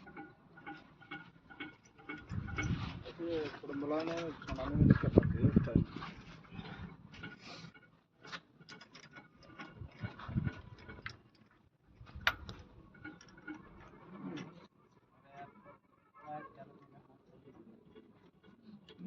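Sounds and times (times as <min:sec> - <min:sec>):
box spanner clicking on wheel nuts: 0:07.2 - 0:14.6.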